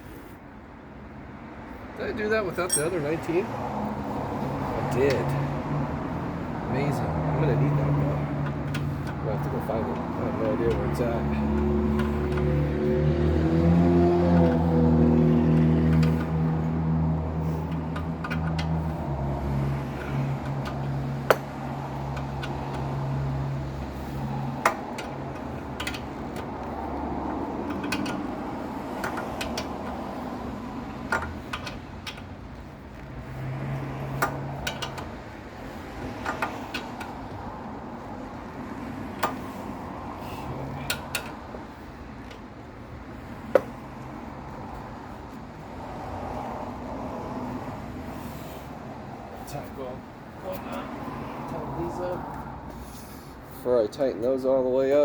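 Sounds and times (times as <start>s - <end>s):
metal tools and parts clanking: 2.6s - 3.3s.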